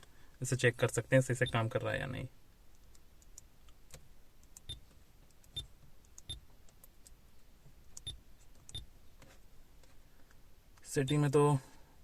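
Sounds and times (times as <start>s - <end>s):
faint touch-screen beeps: 1.4s - 1.7s, 11.0s - 11.4s.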